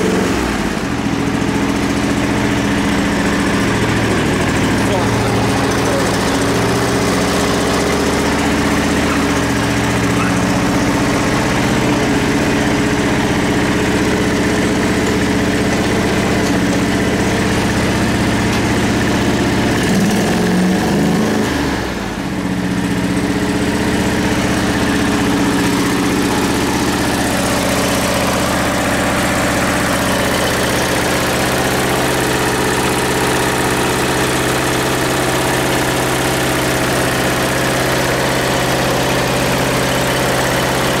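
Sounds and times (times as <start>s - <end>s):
lawn tractor engine idling: 0.0s - 41.0s.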